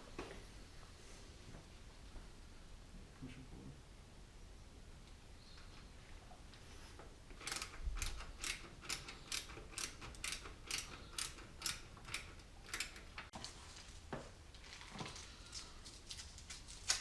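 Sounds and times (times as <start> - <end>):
ratcheting screwdriver clicking: 7.4 - 13.0.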